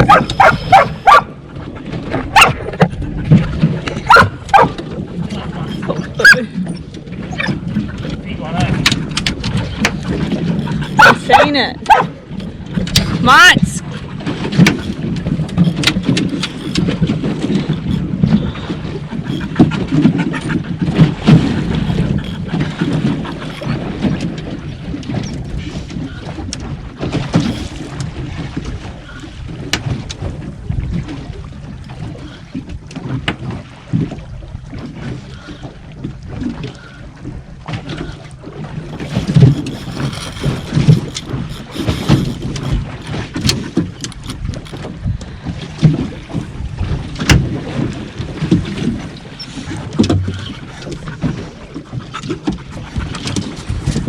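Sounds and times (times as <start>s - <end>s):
water slapping boat hull: 0.0s - 54.0s
wind buffeting microphone: 0.0s - 54.0s
knocks and clicks: 38.9s - 44.9s.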